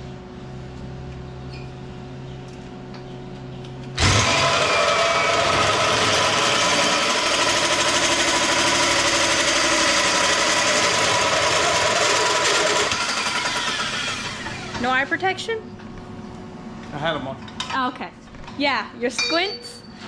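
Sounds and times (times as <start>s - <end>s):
power grinder running: 4.0s - 14.8s.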